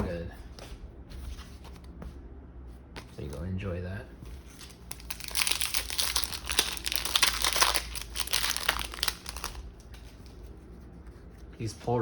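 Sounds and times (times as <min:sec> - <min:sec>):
foil wrapper crinkling: 0:04.5 - 0:10.4.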